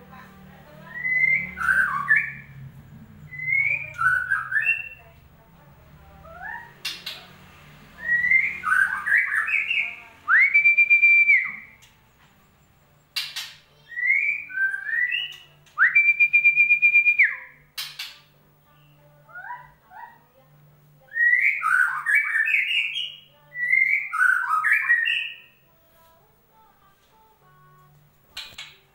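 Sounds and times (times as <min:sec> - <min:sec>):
bird whistled song: 0:00.8 - 0:02.5, 0:03.3 - 0:05.0, 0:06.2 - 0:07.2, 0:08.0 - 0:11.9, 0:13.2 - 0:18.2, 0:21.1 - 0:25.6.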